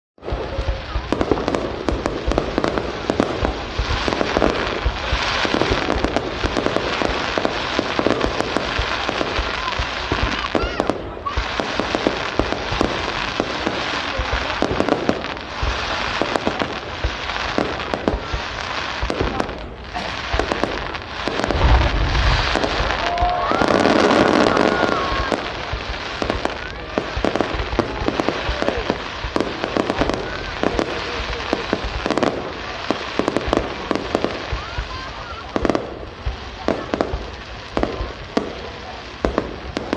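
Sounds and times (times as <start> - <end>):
fireworks bangs and crackling: 0.2 - 39.9
deep firework boom: 12.4 - 32.6.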